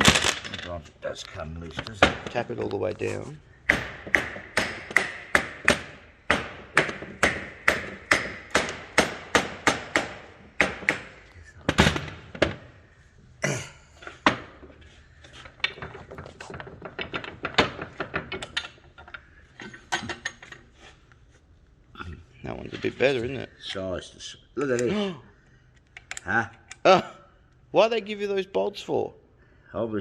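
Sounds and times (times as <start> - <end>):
hammer tapping on metal: 3.7 - 11.2.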